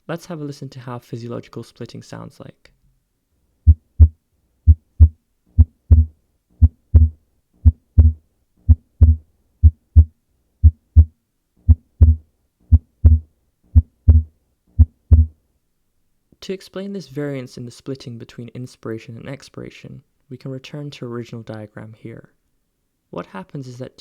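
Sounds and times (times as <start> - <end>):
heartbeat lub-dub thuds: 3.6 - 15.4.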